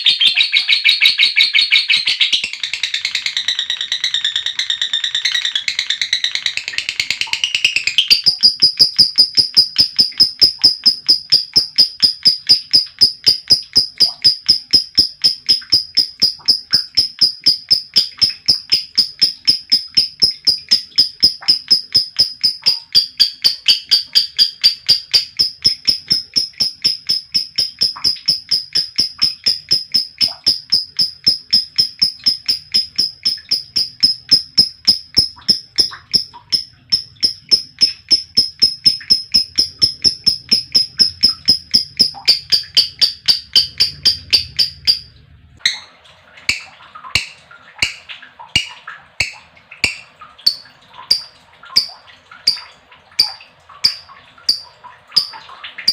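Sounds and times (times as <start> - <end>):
lovebird chirping: 7.4 - 45.0.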